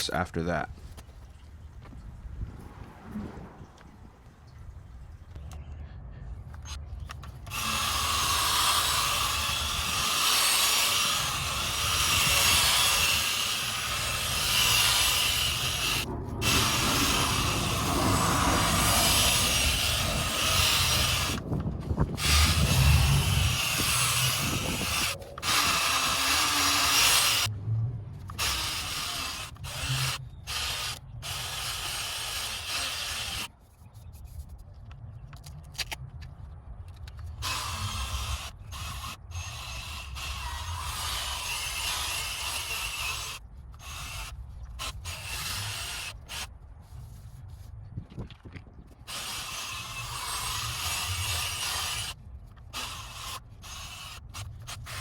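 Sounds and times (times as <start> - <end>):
sanding disc on plastic: 7.5 - 27.5, 37.5 - 47.7, 49.1 - 55.0.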